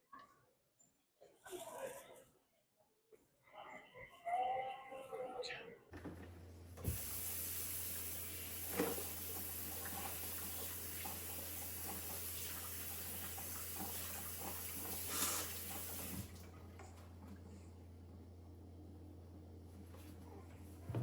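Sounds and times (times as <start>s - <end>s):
running water: 6.8s - 16.6s.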